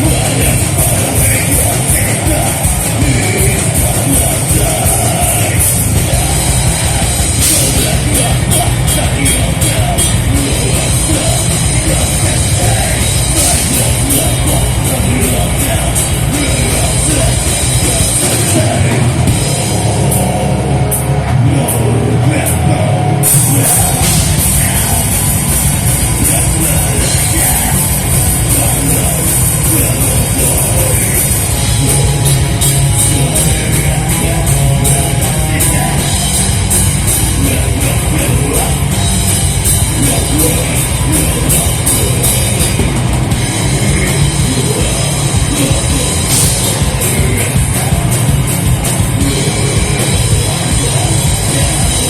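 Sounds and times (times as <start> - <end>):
rock band playing live: 0.0 - 52.0.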